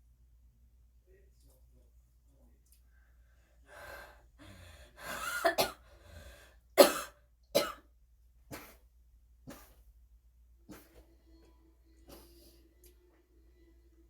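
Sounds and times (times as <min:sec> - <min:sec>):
woman coughing: 0:05.1 - 0:05.8, 0:06.8 - 0:07.8.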